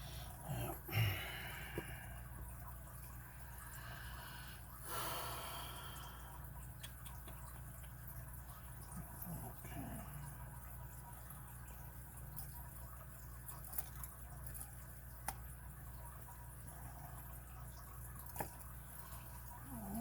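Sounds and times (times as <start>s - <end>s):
person breathing out heavily: 0.0s - 2.2s, 3.7s - 6.4s.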